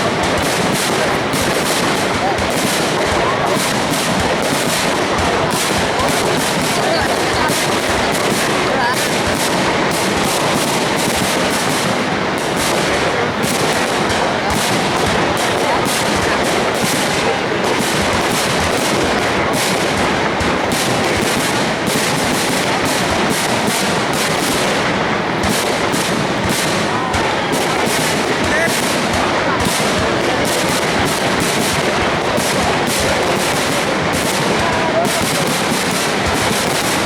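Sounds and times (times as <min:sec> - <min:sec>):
fireworks bangs and crackles: 0:00.0 - 0:37.0.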